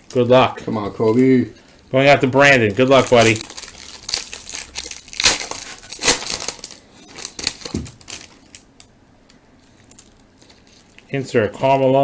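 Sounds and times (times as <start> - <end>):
wrapper tearing and crinkling: 2.2 - 12.0
cards clicking and rustling: 2.3 - 8.6.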